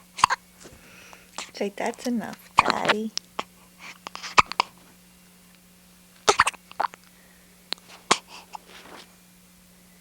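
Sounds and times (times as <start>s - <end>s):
girl hiccuping: 0.1s - 0.5s, 2.6s - 3.5s, 4.3s - 4.7s, 6.2s - 7.0s.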